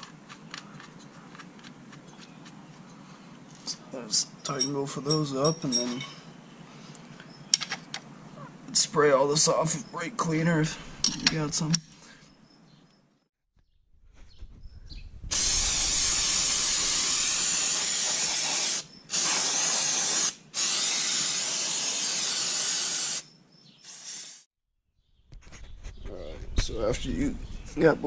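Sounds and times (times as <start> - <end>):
aerosol can spraying: 15.3 - 23.3, 23.9 - 24.5.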